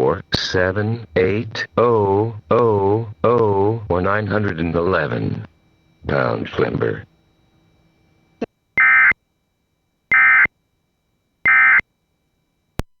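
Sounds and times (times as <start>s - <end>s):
buzzy digital data bursts: 8.8s - 9.2s, 10.1s - 10.5s, 11.4s - 11.8s.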